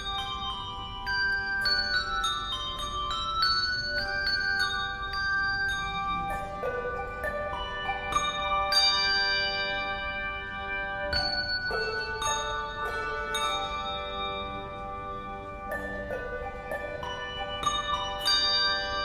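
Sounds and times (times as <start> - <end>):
tuned bells melody: 0.0 - 19.0.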